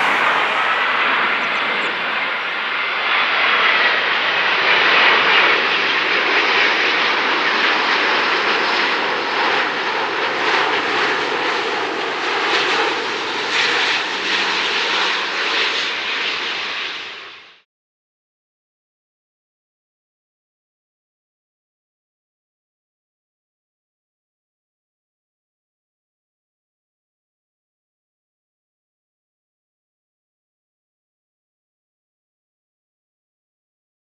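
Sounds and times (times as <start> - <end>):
faint high whine: 0.0 - 6.3
jet engine roar: 0.0 - 17.6.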